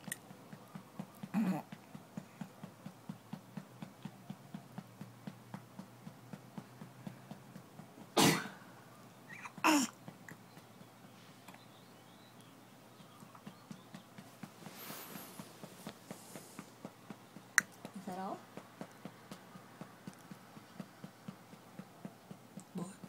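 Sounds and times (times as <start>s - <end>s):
baby burping: 1.3s - 1.7s, 9.3s - 10.0s
baby grunting: 1.3s - 1.8s, 9.3s - 10.0s
baby whimpering: 9.3s - 10.0s.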